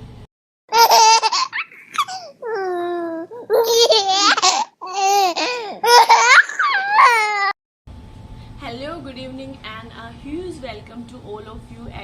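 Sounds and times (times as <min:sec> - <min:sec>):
baby cooing and squealing: 0:00.7 - 0:07.6.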